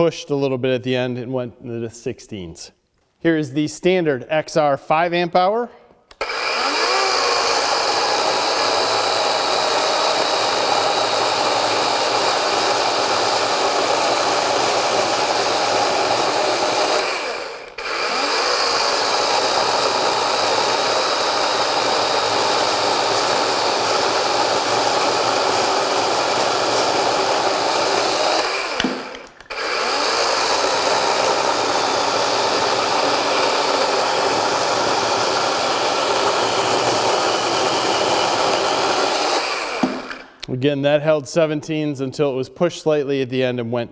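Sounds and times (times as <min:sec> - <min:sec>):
chainsaw cutting wood: 0:06.1 - 0:40.5.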